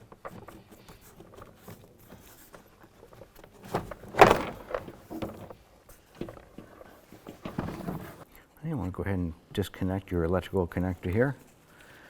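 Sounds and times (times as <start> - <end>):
plastic trim clicks and rustling: 0.0 - 5.6.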